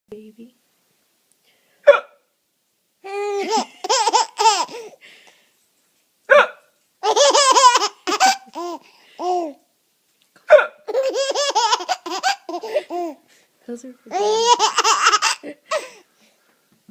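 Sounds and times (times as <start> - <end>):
baby laughing: 3.0 - 5.0, 7.0 - 9.6, 10.5 - 13.2, 14.1 - 16.0
man fake hiccuping: 10.5 - 10.8.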